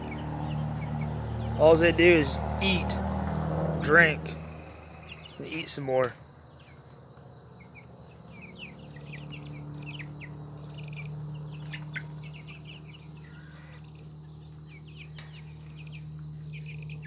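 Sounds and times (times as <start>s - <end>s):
chicks peeping: 0.0s - 3.0s, 3.9s - 17.0s
steady low hum: 0.0s - 17.0s.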